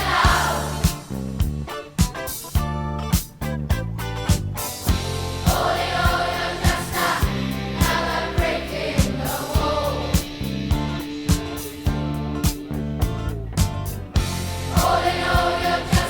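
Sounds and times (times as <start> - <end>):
choir-like vocal song: 0.0 - 1.1, 5.3 - 11.8, 14.4 - 16.0
steady drum beat: 0.0 - 16.0.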